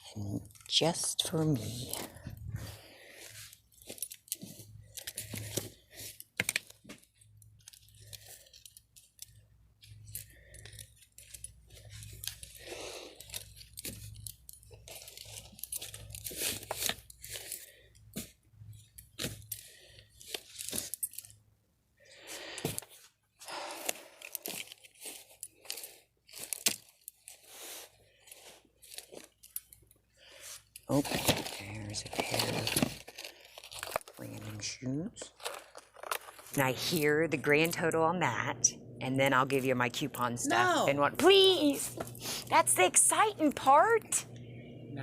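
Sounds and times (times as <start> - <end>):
packaging rustling and crinkling: 1.7 - 21.4, 22.4 - 36.8
low steady hum: 28.1 - 45.0.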